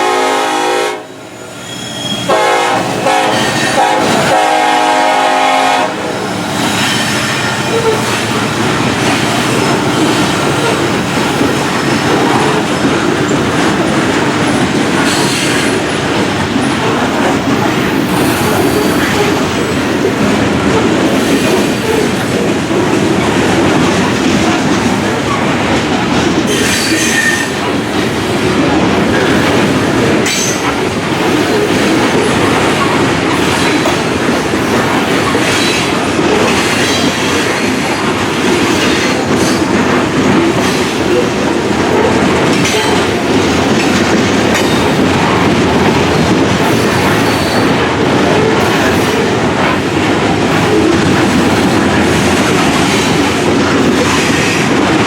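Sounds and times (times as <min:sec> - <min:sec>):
freight train wheels on rail: 0:00.0 - 0:55.0
high wheel squeal: 0:01.3 - 0:02.3, 0:06.5 - 0:08.4, 0:17.6 - 0:19.4.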